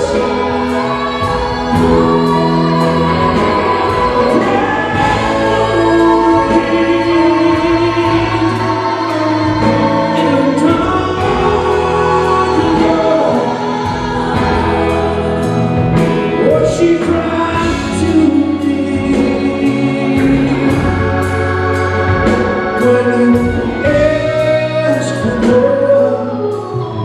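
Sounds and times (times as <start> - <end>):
backing singers holding notes: 0.0 - 27.0
rock band playing slow ballad: 0.0 - 27.0.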